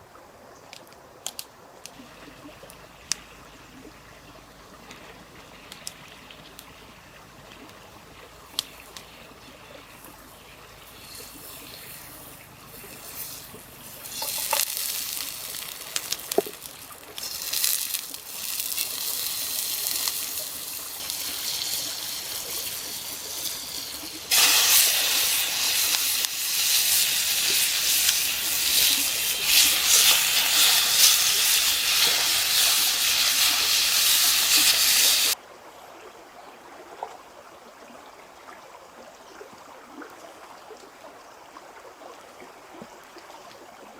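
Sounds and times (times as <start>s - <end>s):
running splashing water: 7.6s - 35.4s
rushing hissing water: 8.0s - 35.4s.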